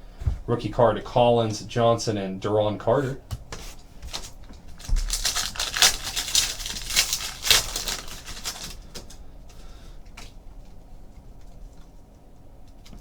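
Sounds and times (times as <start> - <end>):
cards being handled: 3.4 - 9.2
foil card pack crinkling and tearing: 3.6 - 10.4.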